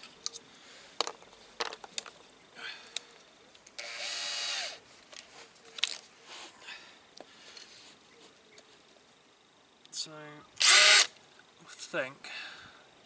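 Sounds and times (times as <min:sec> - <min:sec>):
power drill motor whine: 0:03.8 - 0:04.8, 0:10.6 - 0:11.1.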